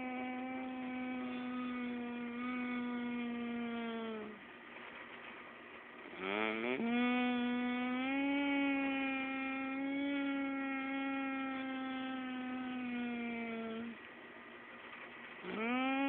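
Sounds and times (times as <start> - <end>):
person humming a moo: 0.0 - 4.4, 6.1 - 14.0, 15.5 - 16.0.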